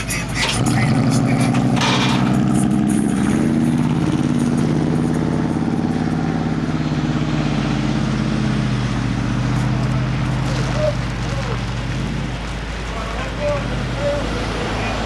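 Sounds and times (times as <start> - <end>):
vehicle engine idling: 0.0 - 15.0.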